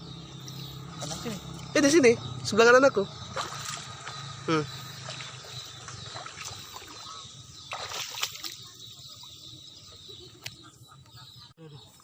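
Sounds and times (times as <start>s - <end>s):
muddy water sloshing: 3.2s - 10.6s.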